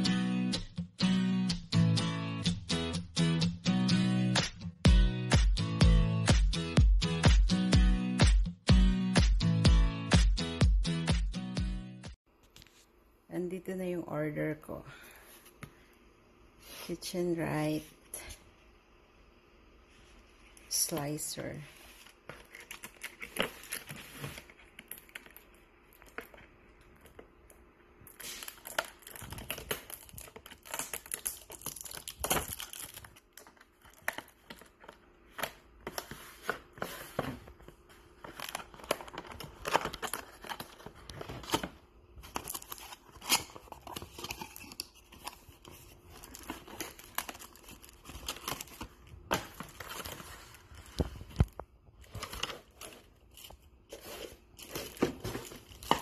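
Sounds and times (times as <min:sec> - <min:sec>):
packaging crinkling and tearing: 0:22.0 - 0:27.2, 0:28.0 - 0:36.1, 0:37.8 - 0:56.0.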